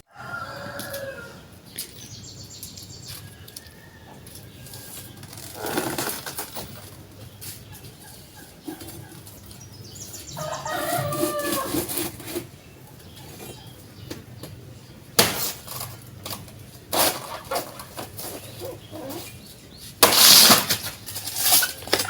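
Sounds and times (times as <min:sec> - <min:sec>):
chicken clucking: 0:07.2 - 0:14.1.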